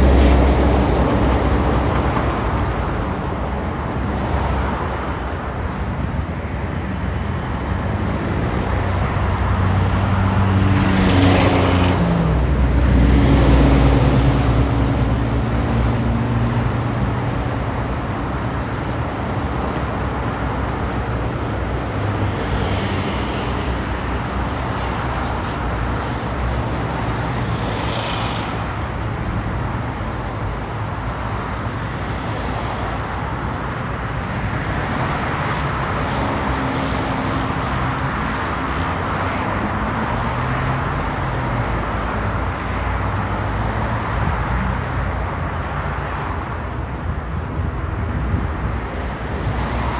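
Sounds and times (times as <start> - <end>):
road traffic rumble: 0.0 - 49.9
car passing by: 8.0 - 17.5, 22.0 - 29.6, 34.3 - 41.7, 48.4 - 49.9.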